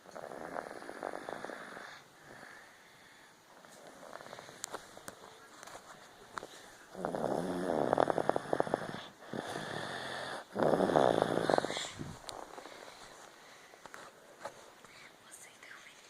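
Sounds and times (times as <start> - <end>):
person snoring through nose: 0.0 - 2.6, 6.9 - 12.7
quiet breath: 0.0 - 7.5, 8.4 - 10.6, 11.3 - 16.0.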